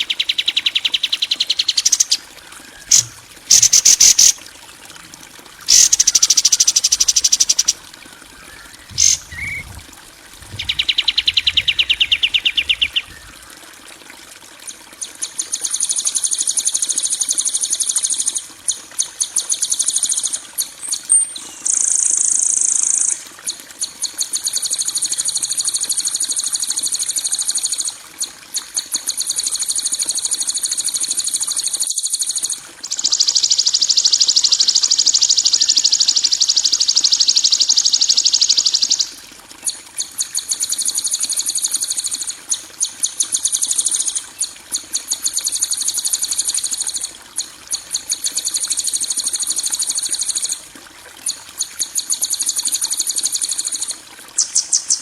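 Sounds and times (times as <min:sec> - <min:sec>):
songbird buzzing rattle calls: 0:00.0 - 0:04.4, 0:05.7 - 0:07.8, 0:08.4 - 0:09.8, 0:10.4 - 0:13.3, 0:21.0 - 0:23.2, 0:31.8 - 0:39.1.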